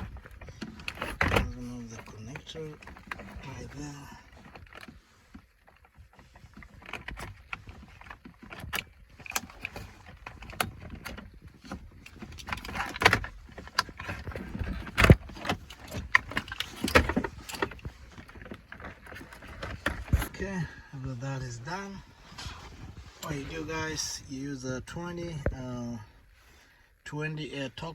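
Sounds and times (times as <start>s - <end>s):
plastic and metal parts rattling: 0.0s - 25.9s.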